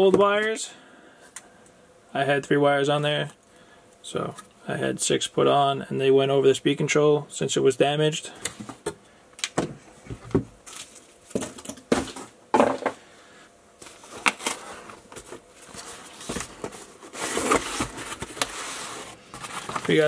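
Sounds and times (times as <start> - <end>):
plastic wrapping rustling: 10.6 - 12.3, 13.8 - 20.0.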